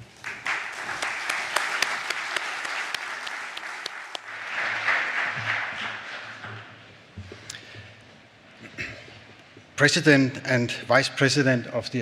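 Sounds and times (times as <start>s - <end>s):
audience applauding: 0.0s - 6.7s.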